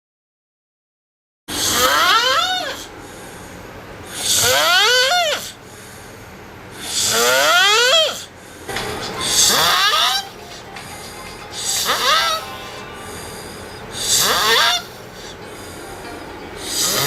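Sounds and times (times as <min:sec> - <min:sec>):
person snoring loudly: 0:06.8 - 0:08.2, 0:11.0 - 0:15.4, 0:16.6 - 0:17.0.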